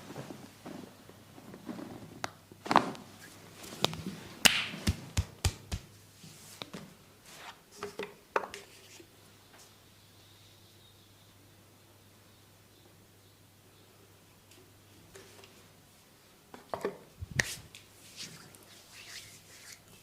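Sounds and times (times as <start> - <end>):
hands slapping and chopping body: 4.4 - 5.9.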